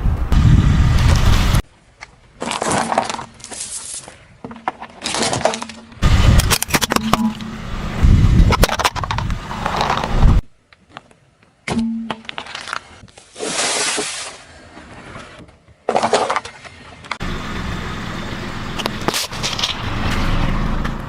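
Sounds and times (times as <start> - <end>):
tyre crushing objects: 2.4 - 7.4.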